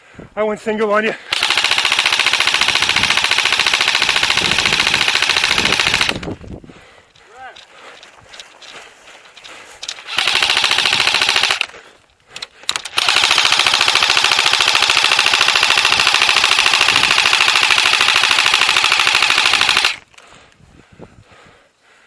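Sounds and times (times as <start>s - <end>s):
airsoft rifle firing: 1.3s - 6.3s, 10.0s - 11.7s, 12.7s - 20.0s.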